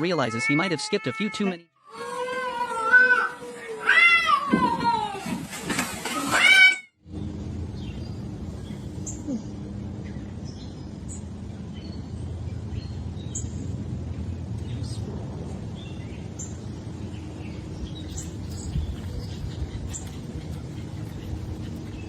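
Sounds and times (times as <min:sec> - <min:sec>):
low background rumble: 0:07.0 - 0:22.0
small birds chirping: 0:07.7 - 0:13.7, 0:15.7 - 0:22.0.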